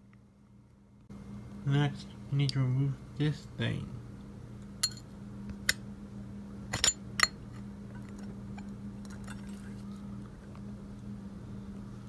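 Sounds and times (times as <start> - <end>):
steady low hum: 0.0 - 12.0
metal-on-metal clinks: 4.8 - 5.0, 6.7 - 7.4.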